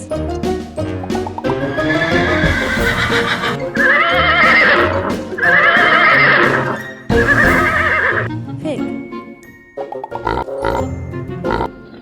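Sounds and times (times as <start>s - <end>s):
background music: 0.0s - 12.0s
horse neighing: 1.4s - 6.6s, 7.2s - 8.3s.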